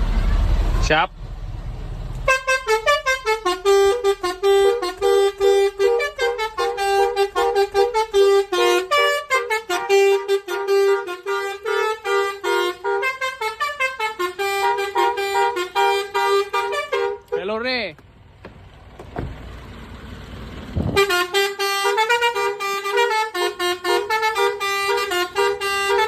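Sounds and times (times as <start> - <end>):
bus air horn melody: 2.2 - 17.6, 20.9 - 26.0.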